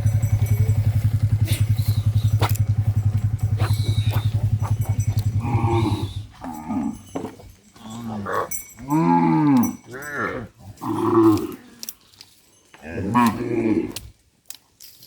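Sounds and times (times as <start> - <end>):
engine running: 0.0 - 7.2
cattle mooing: 3.0 - 7.1, 7.8 - 11.6, 12.8 - 14.0.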